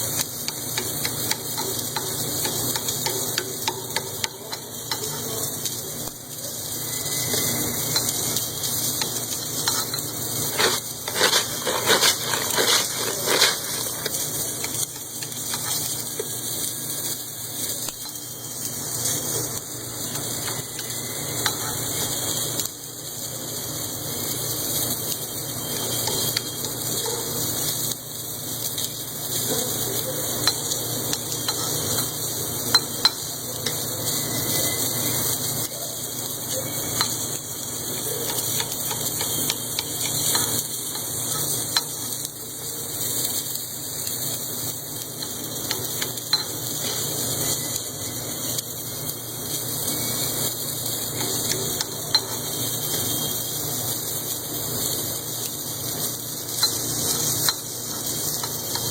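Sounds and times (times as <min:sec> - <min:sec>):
machine hissing: 0:00.0 - 0:58.9.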